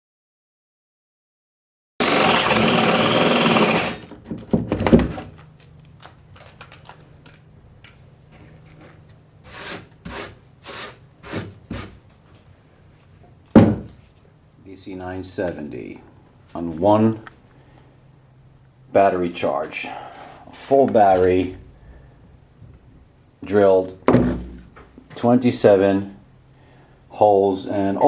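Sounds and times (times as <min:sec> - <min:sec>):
cordless drill running: 0:02.0 - 0:04.1.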